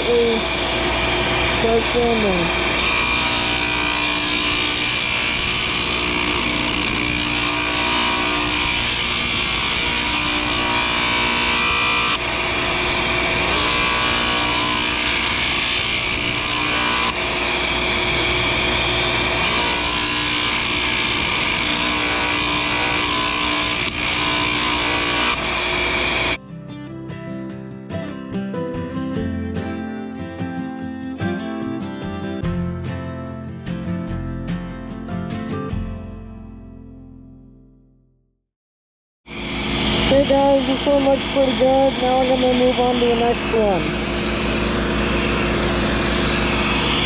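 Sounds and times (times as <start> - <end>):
sander motor whine: 0.0 - 26.4, 39.3 - 47.0.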